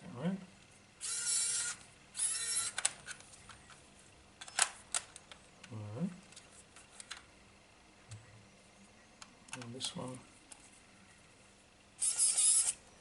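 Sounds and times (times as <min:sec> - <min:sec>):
electric screwdriver motor whirring: 0:01.0 - 0:02.9, 0:12.0 - 0:12.8.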